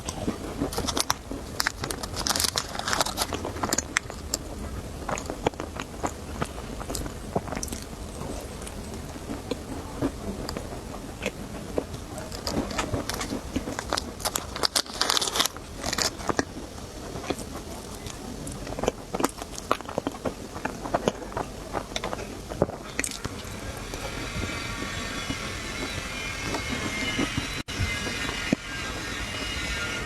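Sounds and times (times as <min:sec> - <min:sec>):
crisp snack crunching: 0:00.0 - 0:27.4.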